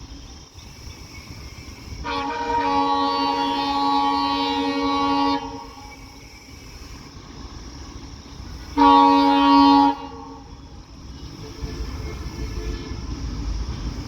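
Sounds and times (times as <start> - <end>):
low train rumble: 0.0 - 14.0
locomotive horn blasts: 2.0 - 6.1, 8.8 - 13.4.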